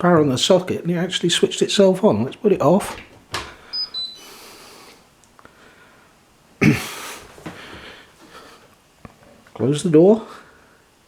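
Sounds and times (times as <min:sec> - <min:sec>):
faint breathy hiss: 0:02.8 - 0:08.9, 0:10.1 - 0:11.0.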